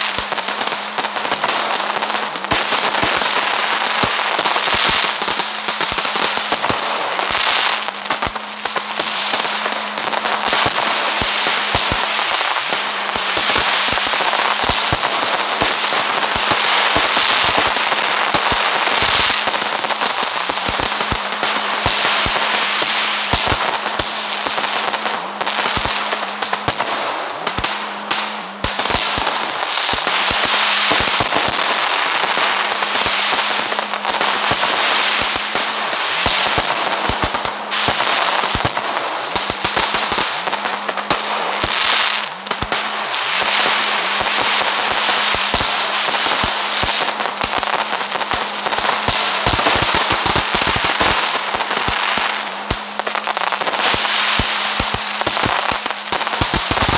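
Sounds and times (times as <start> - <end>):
fireworks hiss and crackle: 0.0 - 56.9
fireworks popping: 0.0 - 56.9
steady low hum: 7.8 - 17.2, 17.8 - 50.2.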